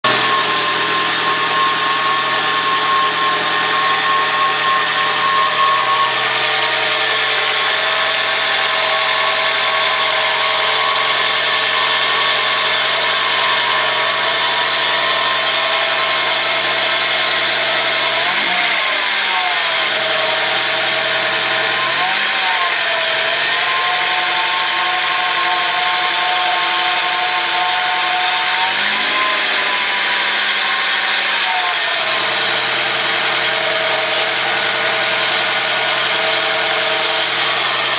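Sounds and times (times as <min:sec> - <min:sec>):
steady whine: 0:00.0 - 0:19.1
car engine running: 0:00.0 - 0:37.9.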